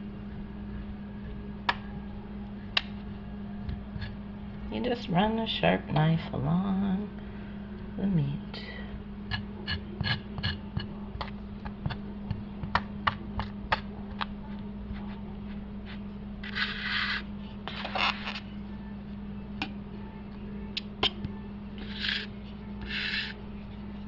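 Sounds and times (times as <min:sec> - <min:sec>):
steady low hum: 0:00.0 - 0:24.0
knife blade scraping meat: 0:21.8 - 0:23.4.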